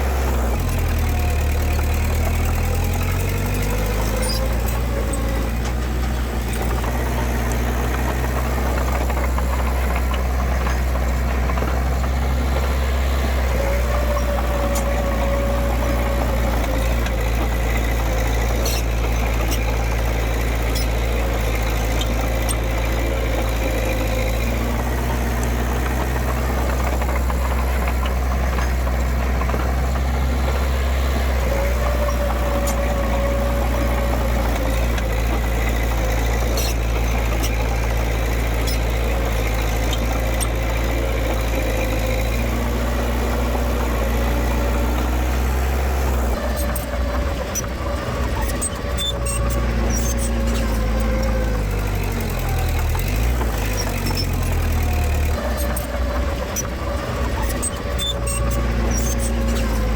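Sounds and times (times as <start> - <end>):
diesel engine humming: 0.0 - 59.9.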